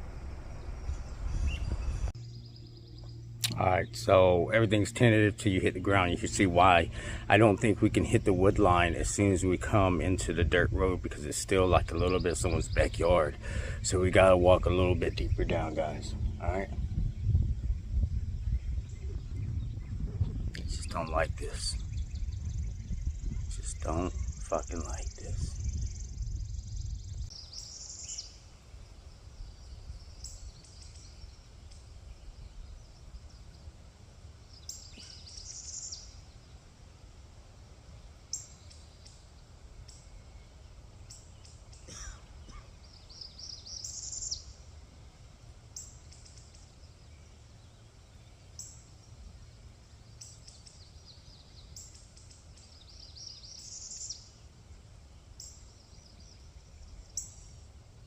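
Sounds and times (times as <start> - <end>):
wind rumble on microphone: 0.0 - 3.2, 4.0 - 34.0.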